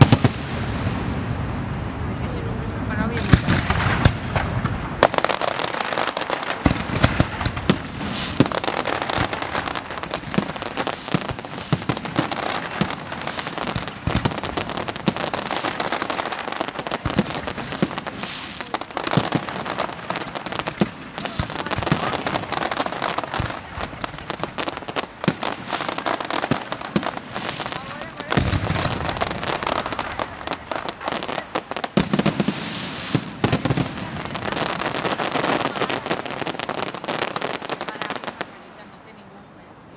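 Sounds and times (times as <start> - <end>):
fireworks bangs: 0.0 - 39.9
fireworks crackling: 0.0 - 39.9.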